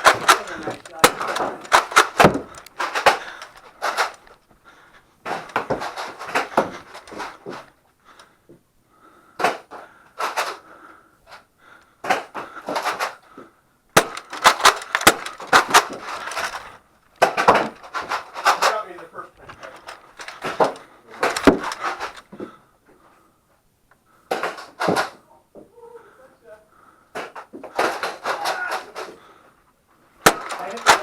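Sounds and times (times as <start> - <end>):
toy blasters clicking and firing: 0.0 - 4.3, 14.0 - 18.8, 30.2 - 31.0.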